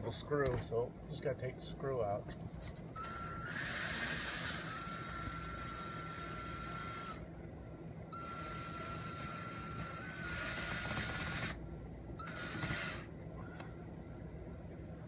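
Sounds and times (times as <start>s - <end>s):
power drill motor whining: 3.0s - 7.3s, 8.2s - 11.6s, 12.2s - 13.2s.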